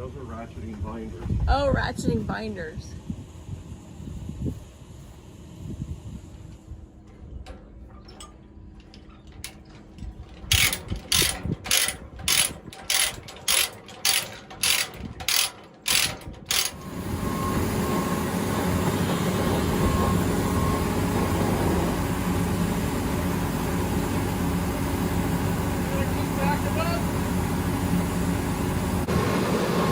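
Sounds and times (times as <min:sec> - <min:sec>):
engine running: 0:08.2 - 0:29.9
ratchet clicks: 0:08.8 - 0:16.8.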